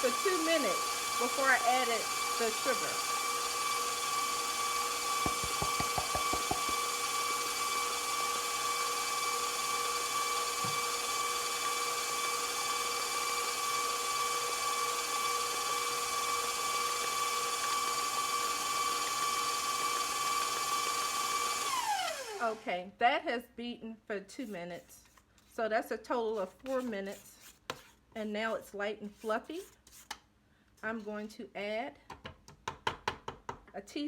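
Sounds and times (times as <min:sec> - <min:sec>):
stand mixer motor whine: 0:00.0 - 0:22.6.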